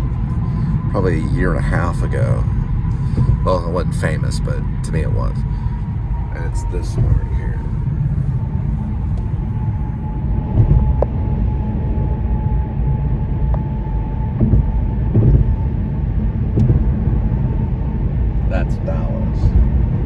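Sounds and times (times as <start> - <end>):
car road and engine rumble: 0.0 - 20.0
faint steady whine: 0.0 - 20.0
small knocks: 14.4 - 15.6.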